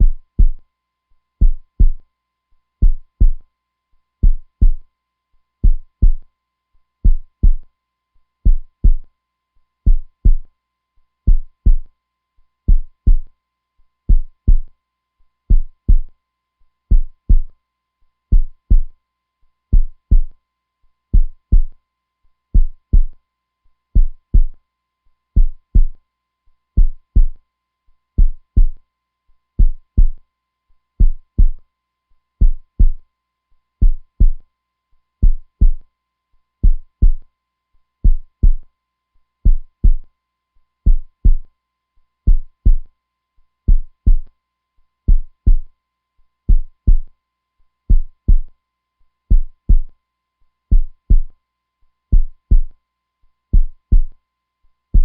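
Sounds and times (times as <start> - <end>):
heartbeat thumps: 0.0 - 0.6, 1.4 - 2.0, 2.8 - 3.4, 4.2 - 4.8, 5.6 - 6.2, 7.0 - 7.6, 8.5 - 9.0, 9.9 - 10.5, 11.3 - 11.9, 12.7 - 13.3, 14.1 - 14.7, 15.5 - 16.1, 16.9 - 17.5, 18.3 - 18.9, 19.7 - 20.3, 21.2 - 21.7, 22.6 - 23.2, 24.0 - 24.6, 25.4 - 26.0, 26.8 - 27.4, 28.2 - 28.8, 29.6 - 30.2, 31.0 - 31.6, 32.4 - 33.0, 33.8 - 34.4, 35.2 - 35.8, 36.6 - 37.2, 38.0 - 38.6, 39.5 - 40.0, 40.9 - 41.4, 42.3 - 42.9, 43.7 - 44.3, 45.1 - 45.7, 46.5 - 47.1, 47.9 - 48.5, 49.3 - 49.9, 50.7 - 51.3, 52.1 - 52.7, 53.5 - 54.1.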